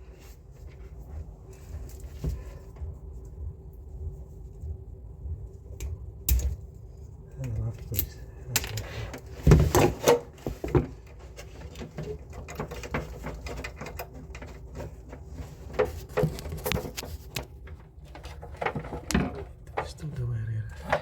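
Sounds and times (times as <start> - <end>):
steady low hum: 0.0 - 21.0
hard parts knocking and clicking: 7.9 - 20.1.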